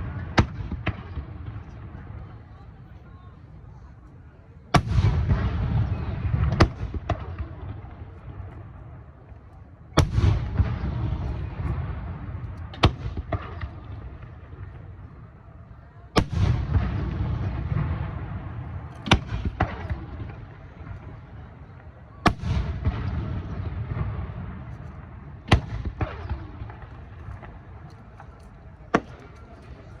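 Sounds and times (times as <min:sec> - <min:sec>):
sharp firework crack: 0:09.9 - 0:15.0, 0:16.2 - 0:29.6
firework shell booms: 0:10.0 - 0:14.6, 0:22.2 - 0:27.8
echoing rumble: 0:10.0 - 0:29.2.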